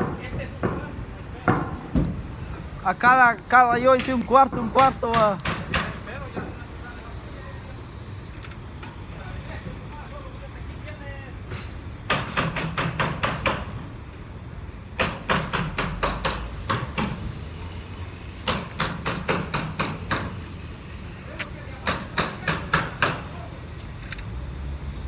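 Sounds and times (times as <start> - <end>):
hammer driving nails into wood: 4.0 - 6.5, 12.1 - 13.8, 15.0 - 17.3, 18.4 - 20.4, 21.8 - 23.4.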